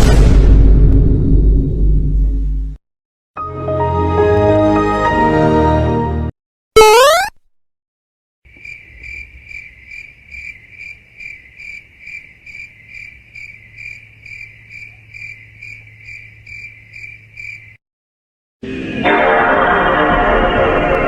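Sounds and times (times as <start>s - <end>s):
crickets chirping: 8.5s - 17.8s.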